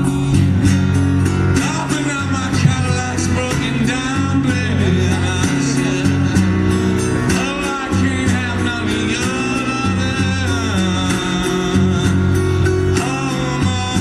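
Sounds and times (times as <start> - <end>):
light steady drum beat: 0.0 - 6.6
blues guitar with bending notes: 0.0 - 14.0
held bass notes: 0.0 - 14.0.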